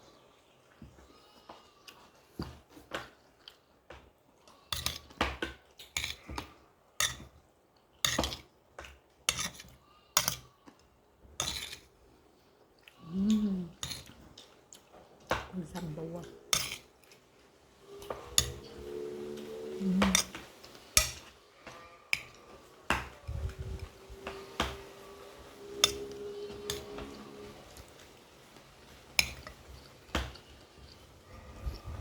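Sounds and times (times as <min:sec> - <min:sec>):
person humming: 0:13.0 - 0:13.8, 0:17.9 - 0:20.4.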